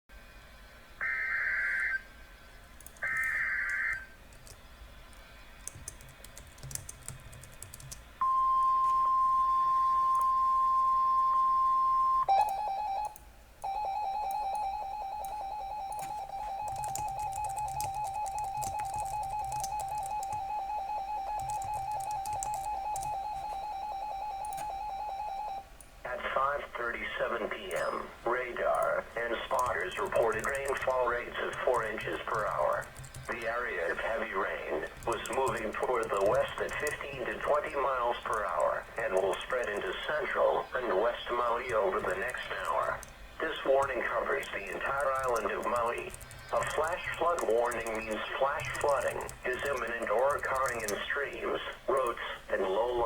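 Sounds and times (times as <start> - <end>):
warbling data bursts: 3.0 - 4.2, 13.7 - 25.5, 26.1 - 52.2
faint clicks: 41.6 - 43.2.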